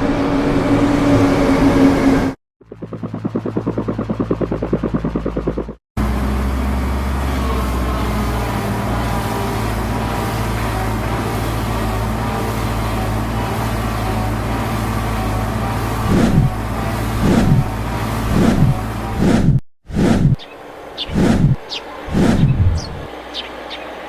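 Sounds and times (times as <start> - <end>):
steady engine hum: 0.0 - 24.0
cartoon engine chugging: 2.6 - 5.8.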